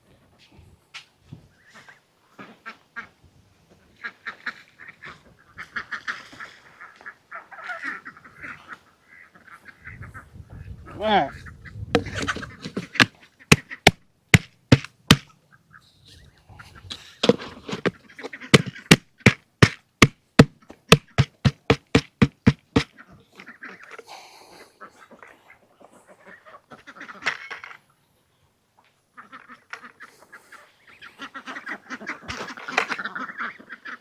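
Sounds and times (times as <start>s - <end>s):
quiet fowl calls: 1.5s - 3.2s, 3.8s - 13.9s, 22.8s - 28.0s, 28.8s - 34.0s
ducks quacking: 4.0s - 13.9s, 16.5s - 19.4s, 22.8s - 27.6s, 29.1s - 34.0s
rustling: 12.0s - 15.2s, 16.9s - 22.9s.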